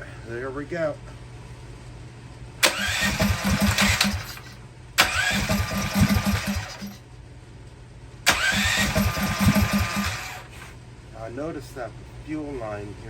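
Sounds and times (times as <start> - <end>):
recoil starter pulls on small engine: 2.6 - 7.0, 8.3 - 10.5.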